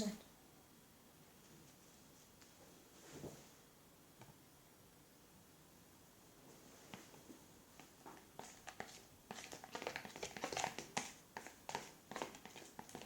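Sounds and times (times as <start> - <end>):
slime stirred in container: 7.8 - 13.0.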